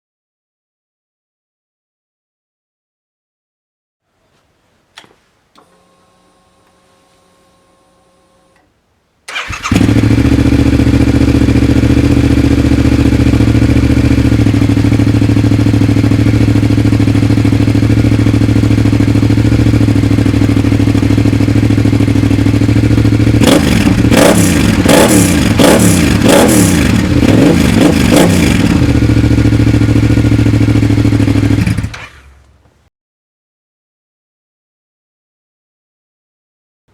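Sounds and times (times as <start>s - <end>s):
motorcycle engine idling and revving: 9.3s - 32.6s.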